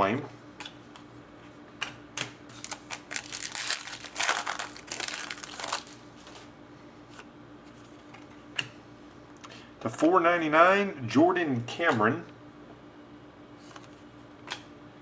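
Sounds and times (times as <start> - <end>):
cards rustling and clicking: 2.2 - 6.5
foil wrapper tearing and crinkling: 2.5 - 6.4.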